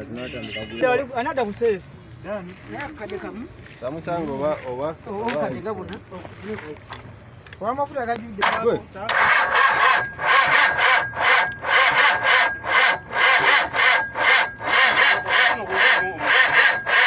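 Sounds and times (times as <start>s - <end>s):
rhythmic hand tool scraping: 9.1s - 17.0s.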